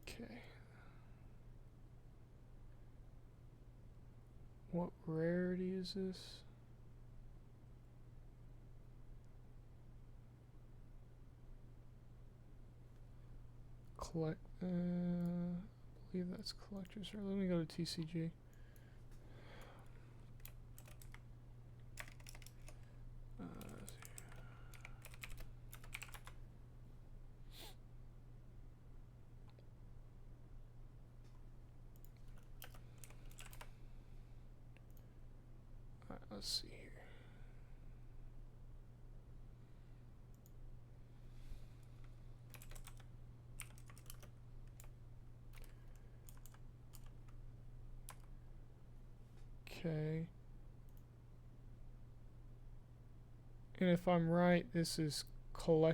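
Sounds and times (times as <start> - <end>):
low electrical hum: 0.0 - 55.9
keyboard typing clicks: 20.4 - 21.2, 22.0 - 22.8, 23.6 - 26.4, 32.0 - 33.7, 42.5 - 44.9, 45.5 - 47.2.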